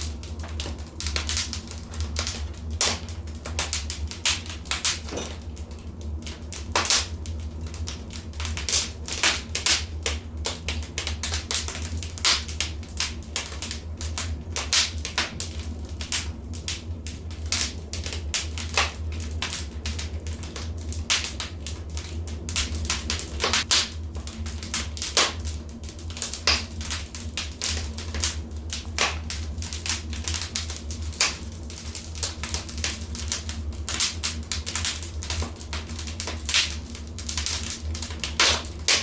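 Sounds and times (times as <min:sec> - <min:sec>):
fire low rumble: 0:00.0 - 0:39.0
fire pops and snaps: 0:00.0 - 0:39.0.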